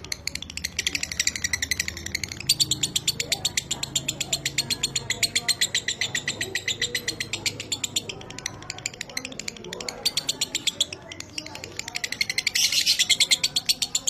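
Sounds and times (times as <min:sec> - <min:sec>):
lovebird chirping rapidly: 0:00.0 - 0:14.0.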